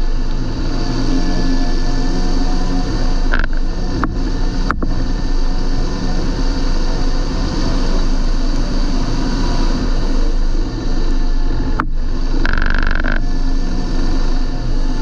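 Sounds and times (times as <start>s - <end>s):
tractor diesel engine running: 0.0s - 15.0s.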